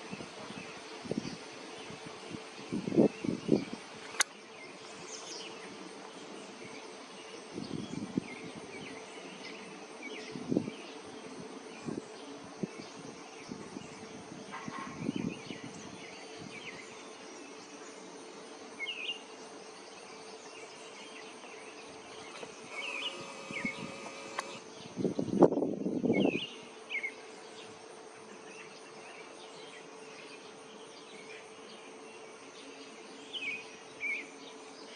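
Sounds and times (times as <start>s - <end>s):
hummingbird wings buzzing: 22.2s - 24.6s.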